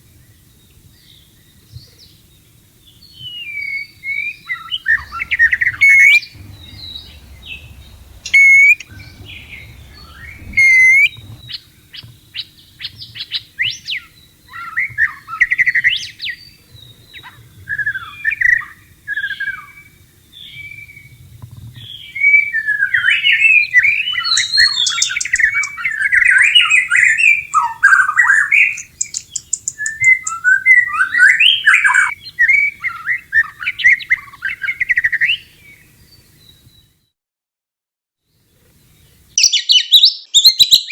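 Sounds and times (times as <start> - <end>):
bird singing: 2.8 - 17.3, 21.8 - 36.9, 38.8 - 40.9.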